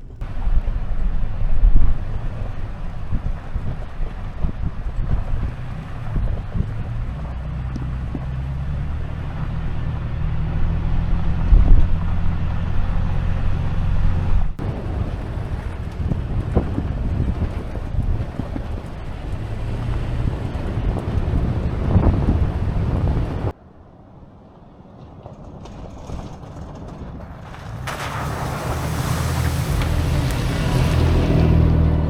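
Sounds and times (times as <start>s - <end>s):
truck engine running: 0.0s - 23.5s, 26.5s - 32.0s
wind and road noise: 0.0s - 32.0s.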